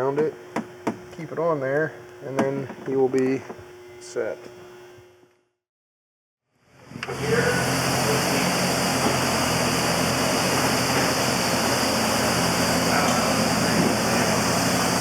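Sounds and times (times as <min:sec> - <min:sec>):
engine droning: 0:07.0 - 0:15.0.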